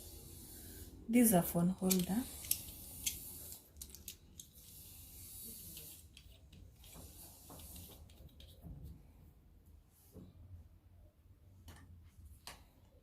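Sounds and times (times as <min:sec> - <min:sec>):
hiss: 0:00.0 - 0:01.0, 0:04.6 - 0:06.0.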